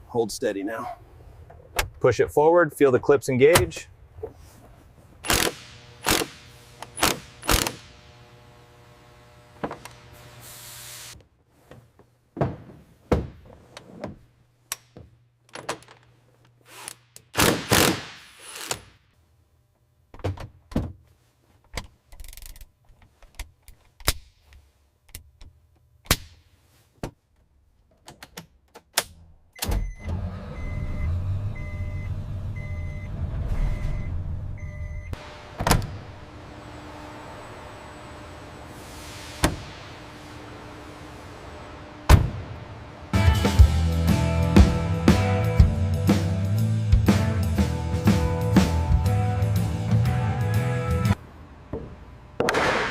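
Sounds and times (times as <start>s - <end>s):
low mechanical hum: 3.8s - 17.1s, 29.5s - 44.0s
brief hissing sweeps: 38.7s - 40.4s.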